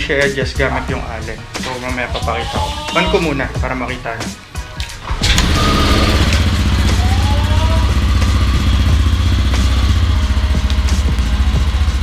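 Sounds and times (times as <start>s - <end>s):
scooter engine starting and idling: 5.0s - 12.0s.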